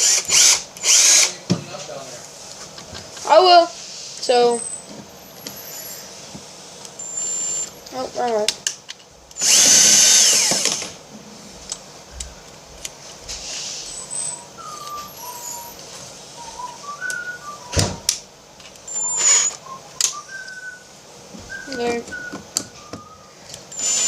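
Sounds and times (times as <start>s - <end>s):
electric screwdriver whirring: 0.0s - 1.4s, 7.1s - 7.8s, 9.4s - 11.0s, 18.9s - 19.6s, 23.7s - 24.0s
short high whistled notes: 13.7s - 18.1s.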